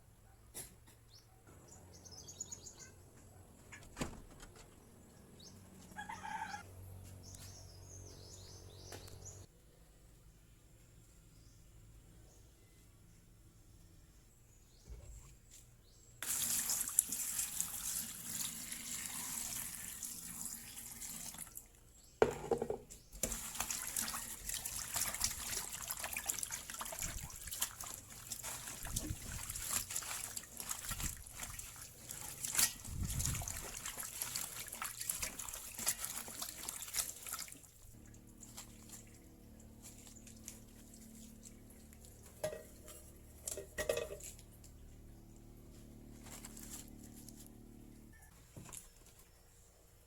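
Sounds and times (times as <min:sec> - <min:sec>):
water running and trickling: 0:16.2 - 0:21.8, 0:23.2 - 0:44.7.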